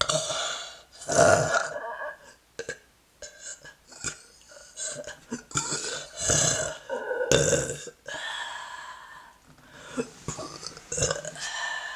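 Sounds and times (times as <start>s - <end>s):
woman belching: 1.0s - 2.8s, 5.5s - 8.0s.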